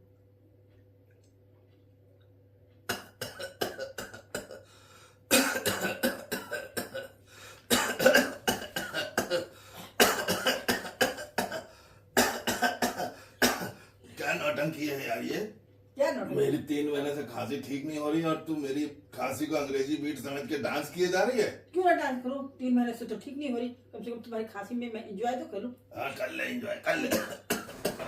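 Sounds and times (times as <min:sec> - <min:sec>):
person coughing in fits: 0:02.9 - 0:04.6, 0:05.3 - 0:13.8, 0:26.8 - 0:28.0.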